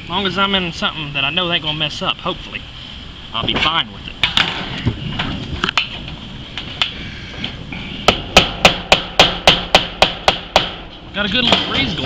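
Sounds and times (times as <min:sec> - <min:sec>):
hammer striking nail on tin roof: 0:08.0 - 0:11.9.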